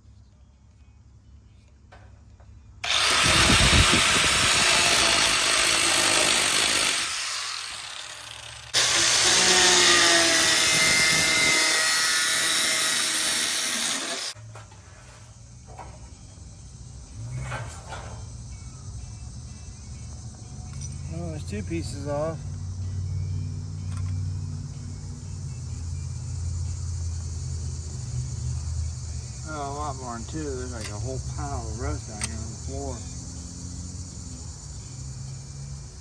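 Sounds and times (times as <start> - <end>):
power tool cutting sheet metal: 2.8 - 14.4.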